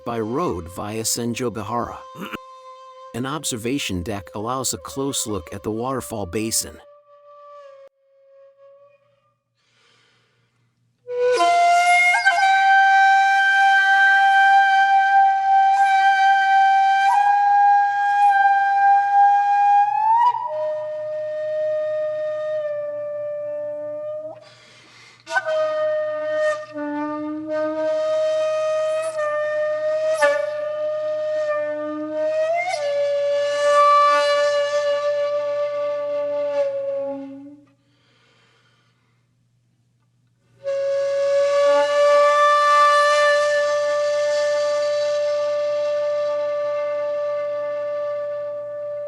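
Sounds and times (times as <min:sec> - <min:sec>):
flute playing long notes: 0:11.1 - 0:24.4, 0:25.3 - 0:37.6, 0:40.6 - 0:49.0.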